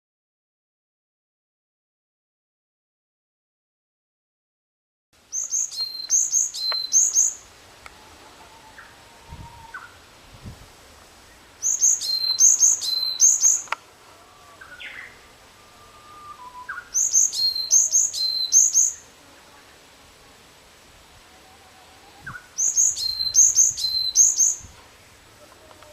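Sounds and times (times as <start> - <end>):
bird singing high clear notes: 5.3 - 7.4, 11.6 - 13.8, 14.6 - 19.1, 22.2 - 24.7
fainter lower bird calls: 5.3 - 10.0, 11.2 - 19.8, 21.2 - 25.9.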